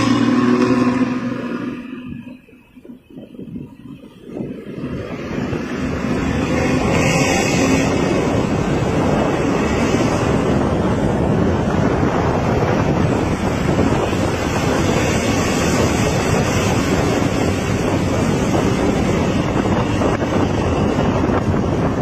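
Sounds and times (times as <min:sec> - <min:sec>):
engine through loud exhaust: 0:00.0 - 0:02.3.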